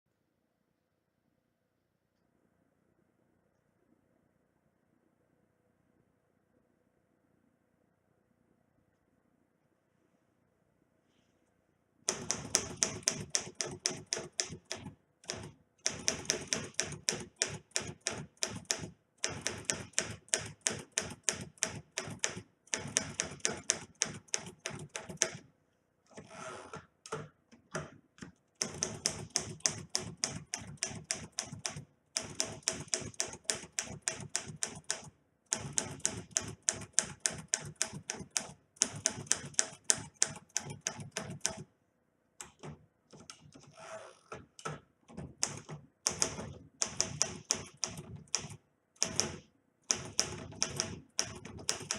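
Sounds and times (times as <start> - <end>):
manual typewriter key strikes: 12.1 - 25.4, 28.6 - 41.6, 44.6 - 51.9.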